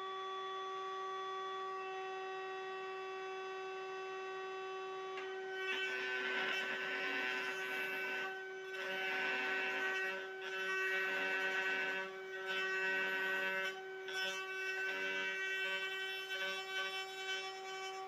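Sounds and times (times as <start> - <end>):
router cutting wood: 4.2 - 18.0.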